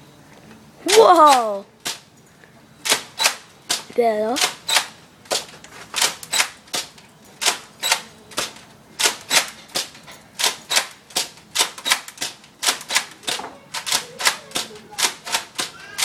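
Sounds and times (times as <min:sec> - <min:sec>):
sharp plastic clicks: 0:00.8 - 0:02.1, 0:02.8 - 0:16.0.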